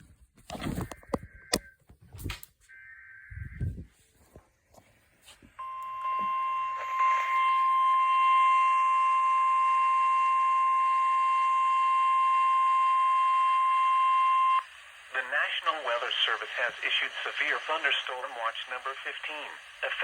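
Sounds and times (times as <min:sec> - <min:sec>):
steady warning alarm tone: 0:02.7 - 0:04.0, 0:05.6 - 0:14.7.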